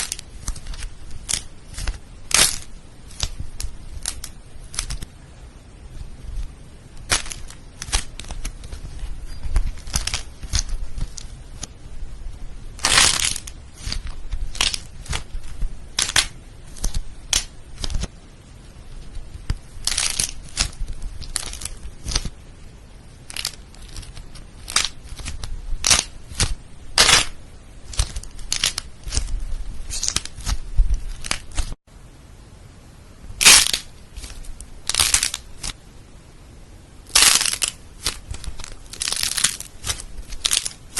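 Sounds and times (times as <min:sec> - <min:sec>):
slime crackling and popping: 0:00.0 - 0:05.1, 0:06.2 - 0:11.7, 0:12.7 - 0:18.1, 0:19.0 - 0:22.4, 0:23.2 - 0:31.8, 0:33.4 - 0:35.8, 0:37.1 - 0:40.9.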